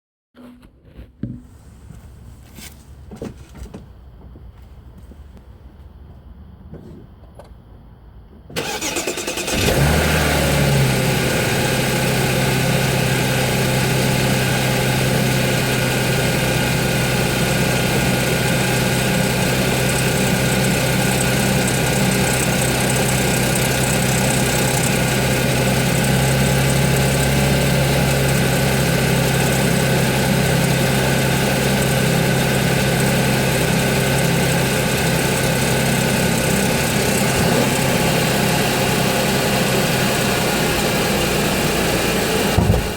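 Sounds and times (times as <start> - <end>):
car engine idling: 8.6 - 42.9
engine rattling and clattering: 8.6 - 42.9.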